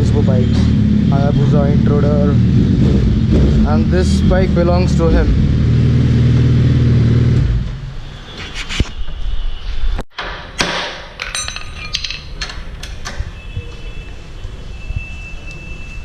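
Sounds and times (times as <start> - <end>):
metal tools clinking on metal: 11.2 - 13.0.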